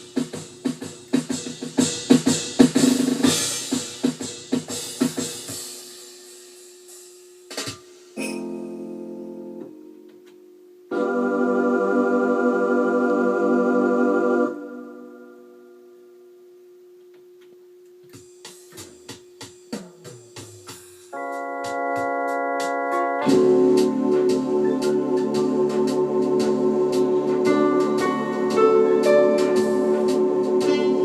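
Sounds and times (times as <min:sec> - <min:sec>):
rhythm section percussion ticks: 0:00.0 - 0:06.0, 0:17.1 - 0:31.0
electronic organ chords: 0:08.2 - 0:10.3, 0:10.9 - 0:15.9, 0:21.1 - 0:31.0.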